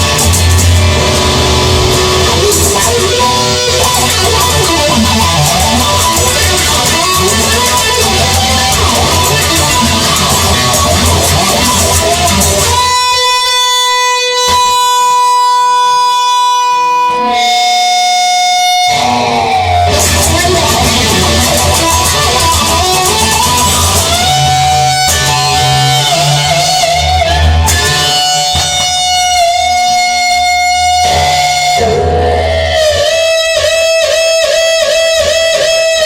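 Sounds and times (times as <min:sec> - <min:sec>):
bass line: 0:00.0 - 0:13.0, 0:18.9 - 0:33.1
guitar playing held lead notes: 0:00.0 - 0:36.0.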